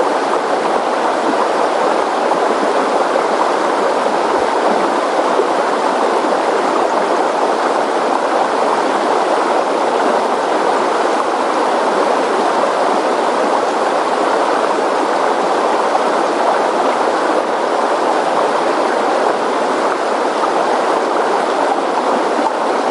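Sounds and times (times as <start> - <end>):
river water rushing: 0.0 - 22.9.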